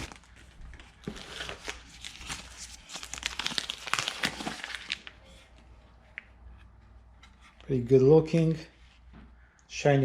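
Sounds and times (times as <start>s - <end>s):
packaging crinkling and rustling: 0.0s - 5.6s.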